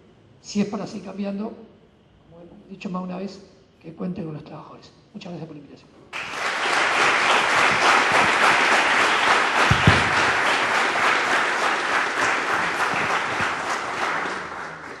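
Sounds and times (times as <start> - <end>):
audience applauding: 6.2 - 15.0
dull thumps: 9.7 - 10.4.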